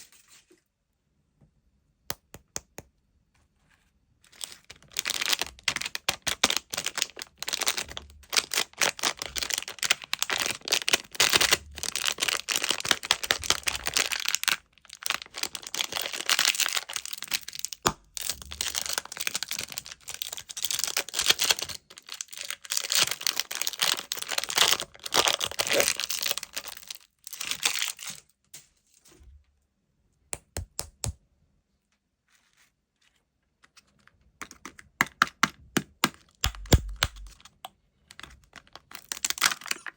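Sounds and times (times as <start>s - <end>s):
plastic wrappers crinkling and tearing: 4.3s - 28.3s, 36.4s - 39.9s.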